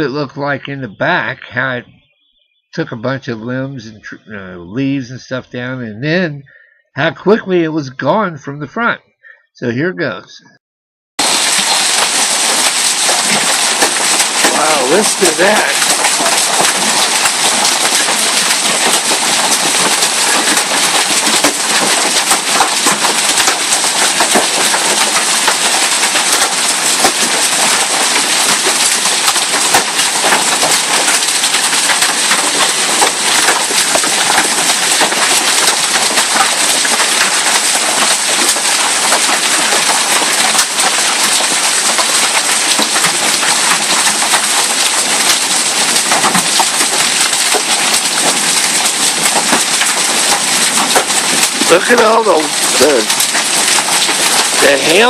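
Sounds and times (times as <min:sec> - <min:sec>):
rushing hiss: 0:11.2 - 0:16.6
hail clattering: 0:11.2 - 0:55.0.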